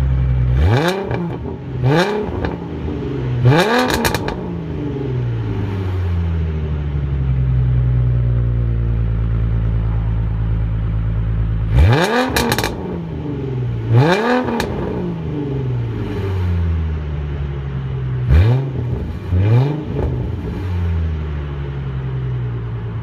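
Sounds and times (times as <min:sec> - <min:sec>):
car exhaust idling and revving: 0:00.0 - 0:23.0.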